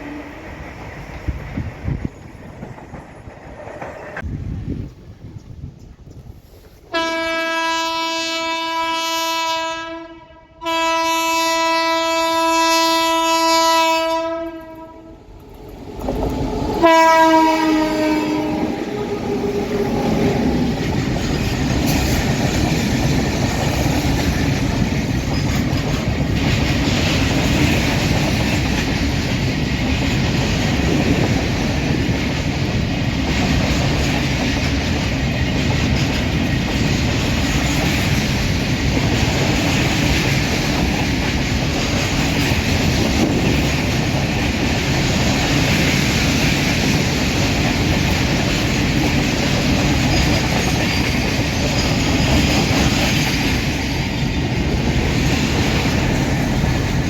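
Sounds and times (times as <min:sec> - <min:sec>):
train rushing past: 0:00.0 - 0:09.9, 0:10.6 - 0:57.0
train horn blasts: 0:06.9 - 0:15.3, 0:16.7 - 0:20.2
wheels clattering on rails: 0:18.4 - 0:57.0.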